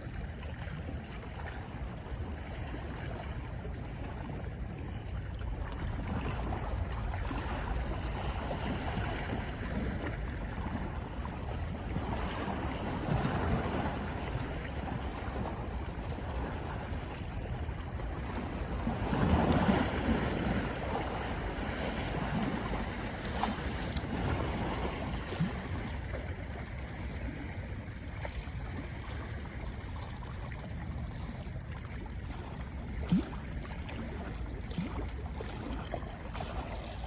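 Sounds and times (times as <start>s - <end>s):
sea waves washing on shore: 0.0s - 37.0s
wind buffeting microphone: 2.2s - 31.5s.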